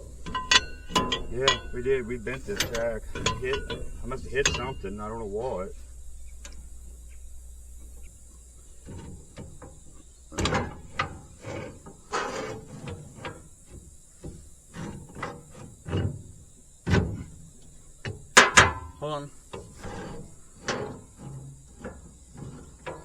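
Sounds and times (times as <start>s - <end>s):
metal clanking and knocking: 0.0s - 11.4s.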